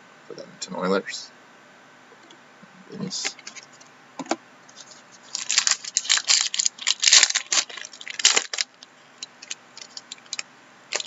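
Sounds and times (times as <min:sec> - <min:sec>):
wrapper crinkling and tearing: 0:04.7 - 0:11.0.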